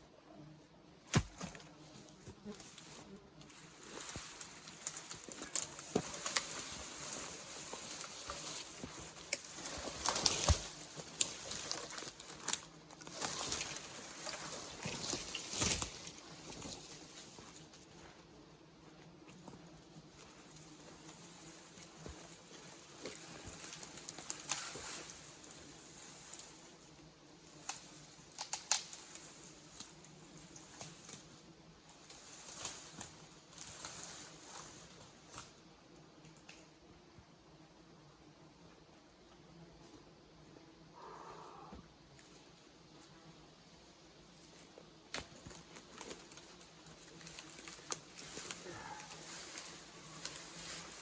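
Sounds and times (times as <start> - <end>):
branches cracking and rustling: 1.1 - 18.1, 19.6 - 35.6, 44.4 - 51.0
twigs snapping: 3.4 - 17.0, 22.9 - 26.5, 27.4 - 30.0, 45.1 - 51.0.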